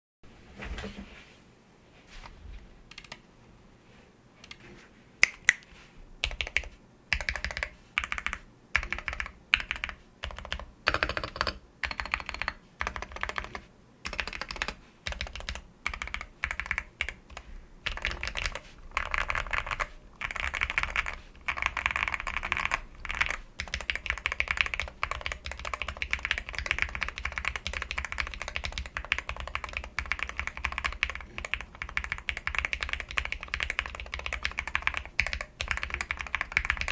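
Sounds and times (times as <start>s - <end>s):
mechanical keyboard typing: 2.9s - 3.2s, 6.2s - 36.9s.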